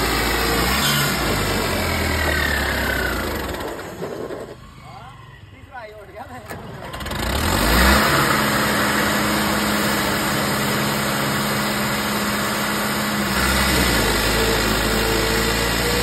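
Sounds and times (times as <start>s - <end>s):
tractor diesel engine running: 0.0s - 4.5s, 6.7s - 16.0s.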